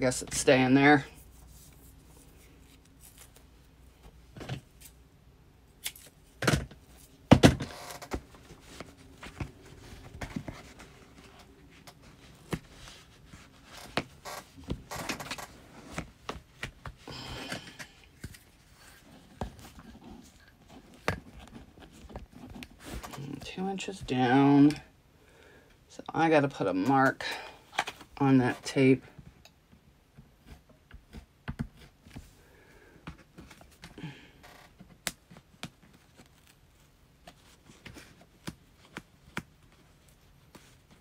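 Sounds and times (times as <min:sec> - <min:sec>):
vinyl and tape rustling: 0:05.8 - 0:24.8.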